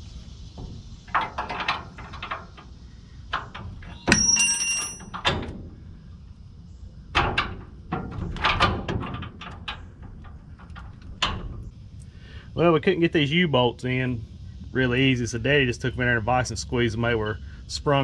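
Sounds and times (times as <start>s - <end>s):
metallic clang: 3.4s - 5.6s.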